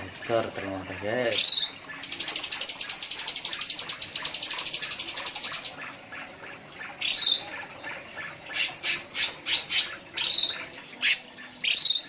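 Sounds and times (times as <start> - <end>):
bird singing: 1.2 - 5.8, 7.0 - 7.5, 8.6 - 12.0.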